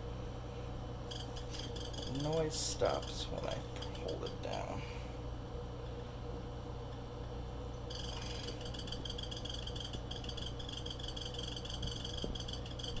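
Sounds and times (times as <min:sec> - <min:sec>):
refrigerator running hum: 0:00.0 - 0:13.0
high-pitched fluttering chirp: 0:07.9 - 0:13.0.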